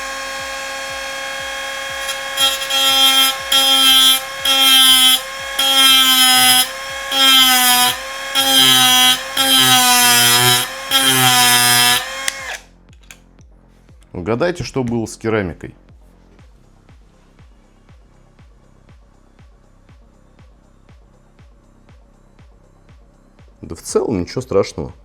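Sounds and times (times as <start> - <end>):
angle grinder whine: 0.0 - 12.6
grinder disc grinding ceramic: 0.0 - 12.6.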